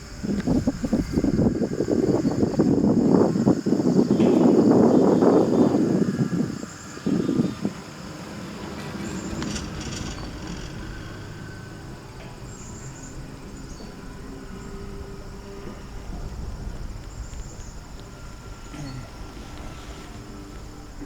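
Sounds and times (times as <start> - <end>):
low rumble: 0.0 - 3.2, 8.6 - 21.0
crickets chirping: 0.0 - 21.0.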